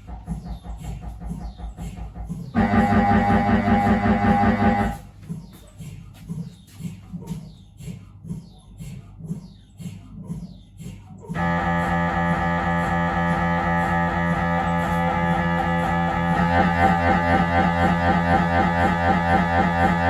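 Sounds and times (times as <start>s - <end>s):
mri scanner loud buzzing drone: 2.6s - 5.0s, 11.4s - 20.0s.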